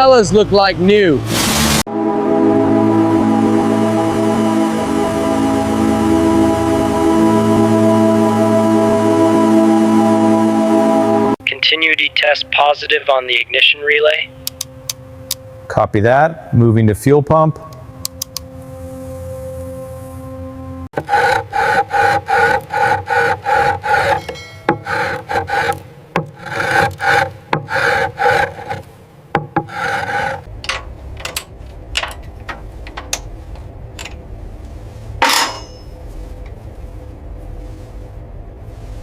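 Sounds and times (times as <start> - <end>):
sharp clicks: 14.4 - 15.4, 18.0 - 18.5
hand tool scraping a surface: 21.0 - 30.5.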